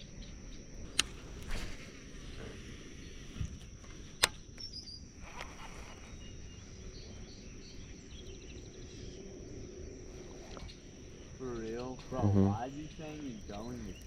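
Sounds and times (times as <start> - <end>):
insects droning: 0.0 - 14.0
low outdoor hum: 0.0 - 14.0
sharp click: 0.9 - 1.2
bird chirps: 4.4 - 14.0.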